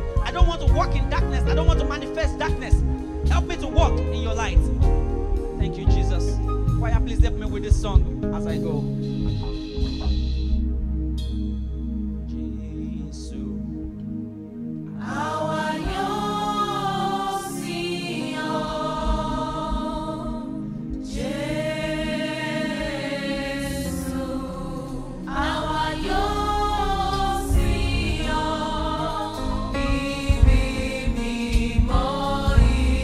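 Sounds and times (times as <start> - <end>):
instrumental accompaniment: 0.0 - 33.0
church choir singing: 14.9 - 33.0.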